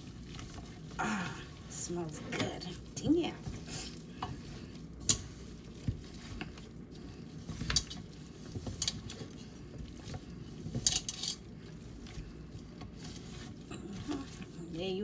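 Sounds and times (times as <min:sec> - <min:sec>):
wet shuffling of meat: 0:00.0 - 0:15.0.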